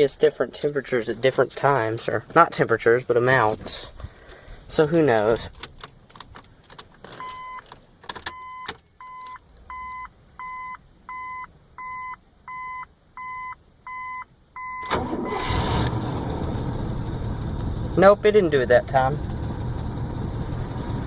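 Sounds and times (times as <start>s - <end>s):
car warning chime beeps: 7.2s - 15.5s
car engine cranking and starting: 14.7s - 21.0s.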